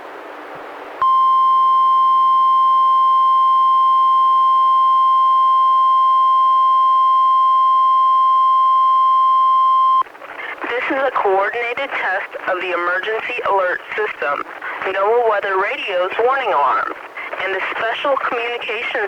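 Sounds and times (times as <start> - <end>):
steady alarm tone: 1.0 - 10.0
radio hiss: 10.0 - 19.0.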